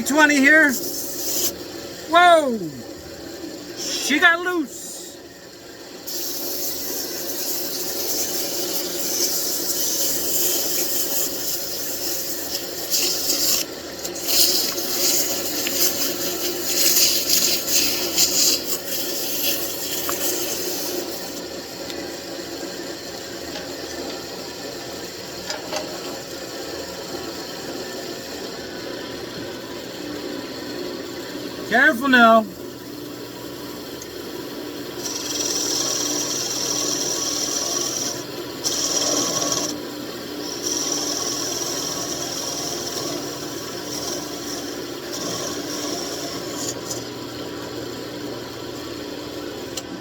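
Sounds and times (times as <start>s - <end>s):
wood lathe running: 6.8s - 21.4s, 35.0s - 39.8s, 40.4s - 47.0s.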